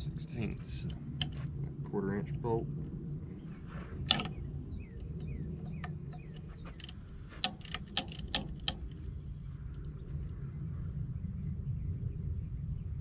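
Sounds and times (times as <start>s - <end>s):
steady low hum: 0.0s - 13.0s
hand tools clinking on metal: 5.0s - 8.9s.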